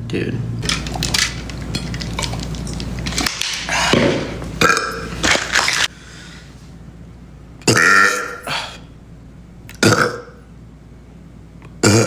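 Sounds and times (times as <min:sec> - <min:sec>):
man burping: 0:04.6 - 0:05.1, 0:07.6 - 0:08.9, 0:09.7 - 0:10.4, 0:11.8 - 0:12.0.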